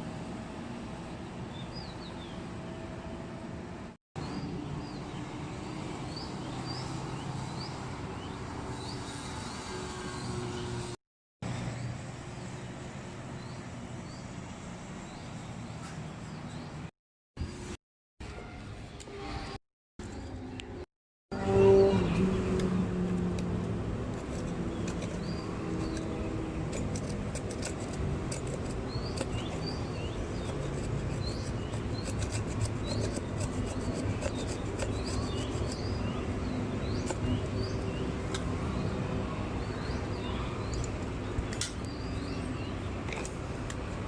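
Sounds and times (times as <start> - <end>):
loud humming tone: 21.3 - 26.7
small birds chirping: 24.2 - 44.0.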